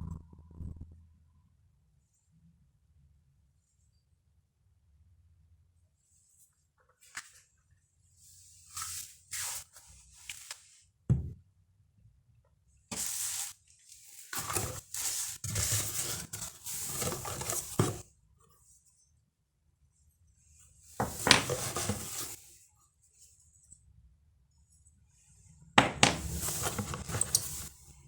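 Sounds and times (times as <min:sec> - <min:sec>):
packaging rustling and crinkling: 0:12.9 - 0:18.0, 0:26.0 - 0:27.8.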